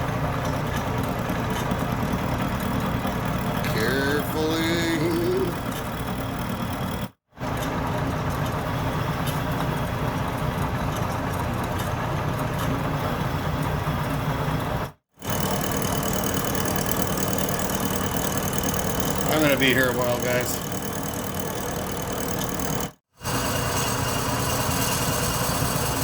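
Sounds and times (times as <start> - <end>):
metal lathe humming: 1.0 - 7.1, 15.2 - 26.0.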